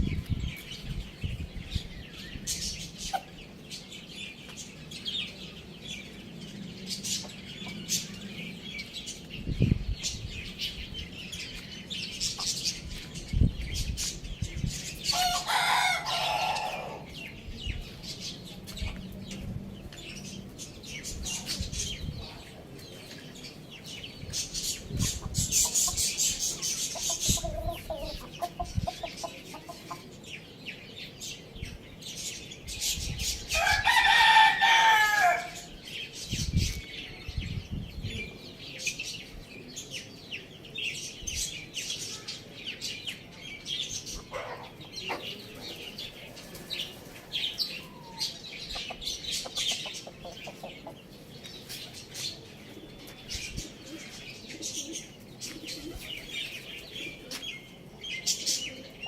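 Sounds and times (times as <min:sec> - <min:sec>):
small birds chirping: 0:00.0 - 0:59.0
rooster crowing: 0:15.2 - 0:17.1, 0:33.6 - 0:35.6
hens clucking: 0:24.8 - 0:30.2, 0:47.8 - 0:51.3.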